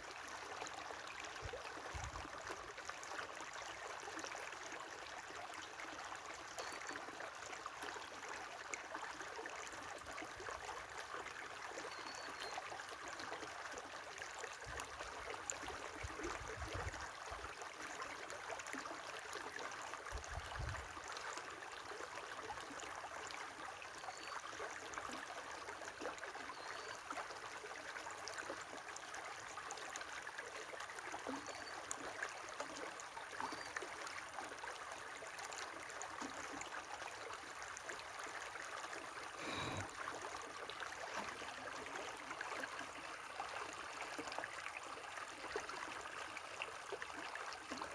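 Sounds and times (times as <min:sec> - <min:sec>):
river running: 0:37.0 - 0:47.9.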